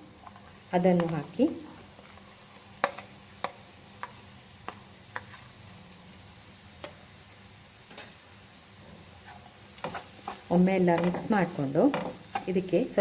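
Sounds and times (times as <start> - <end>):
sizzling in a frying pan: 0.0 - 13.0.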